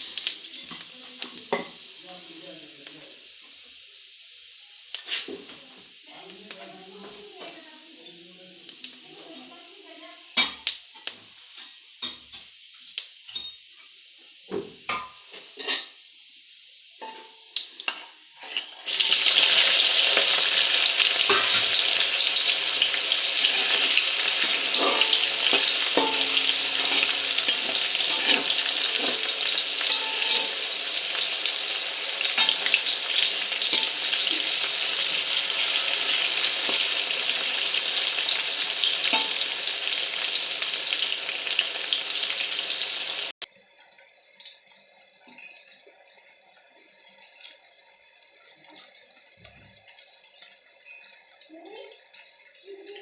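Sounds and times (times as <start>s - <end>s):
food sizzling in hot oil: 0.0s - 53.0s
utensil clinking against pan: 24.5s - 30.6s.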